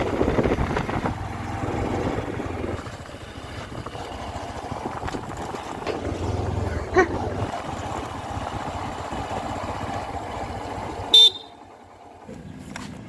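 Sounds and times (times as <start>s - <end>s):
heavy diesel machinery running: 0.0s - 13.0s
loud horn toot: 11.1s - 11.6s.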